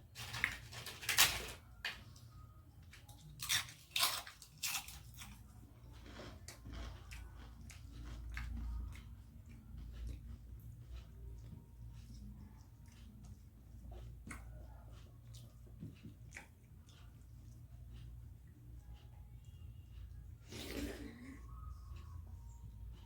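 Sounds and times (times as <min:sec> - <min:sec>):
chewing and mouth clicks: 0:02.8 - 0:19.1.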